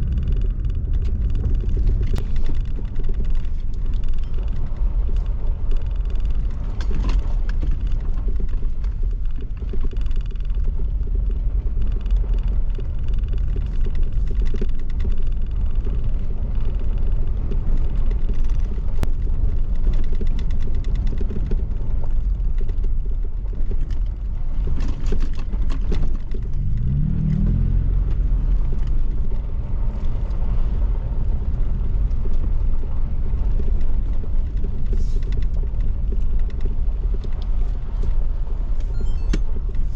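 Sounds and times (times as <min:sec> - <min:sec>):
knocks and rattles: 0:00.0 - 0:27.8
engine and tyres rumbling: 0:00.0 - 0:39.9.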